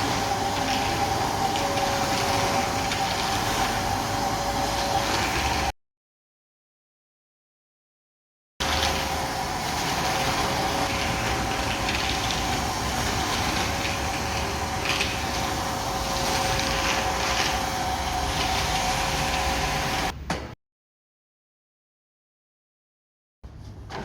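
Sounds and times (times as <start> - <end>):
vacuum cleaner running: 0.0 - 5.7, 8.6 - 20.2.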